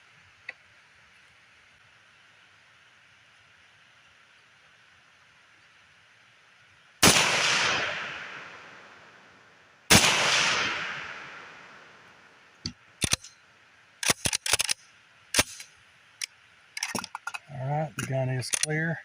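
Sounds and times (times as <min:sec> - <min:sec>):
rifle shots: 0:07.0 - 0:08.9, 0:09.9 - 0:12.0, 0:13.0 - 0:13.3, 0:14.0 - 0:14.8, 0:15.4 - 0:15.7
rifle handling metallic clicks: 0:12.6 - 0:13.3, 0:14.0 - 0:18.8.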